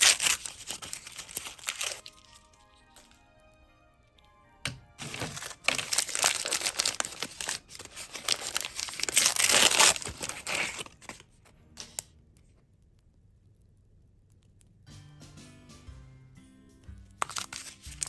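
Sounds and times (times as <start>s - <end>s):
wrapping crumpled and torn: 0.0s - 3.2s, 5.0s - 12.1s, 17.2s - 18.0s
soft music: 0.2s - 12.5s, 14.9s - 18.0s.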